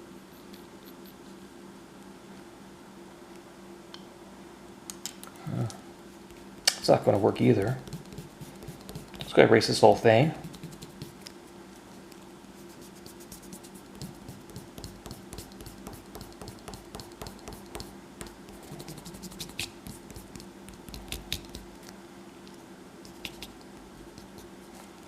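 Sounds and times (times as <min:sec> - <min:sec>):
eraser rubbing on paper: 0:07.6 - 0:11.2, 0:11.8 - 0:21.7, 0:23.1 - 0:24.8.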